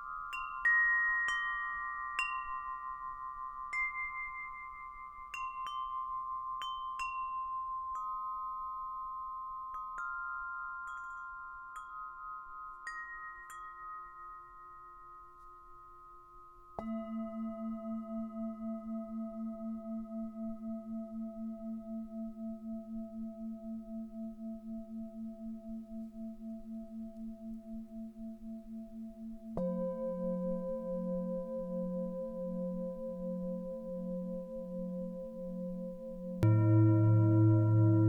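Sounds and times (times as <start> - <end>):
wind chimes tinkling: 0.0 - 19.2
singing bowl ringing: 0.0 - 38.0.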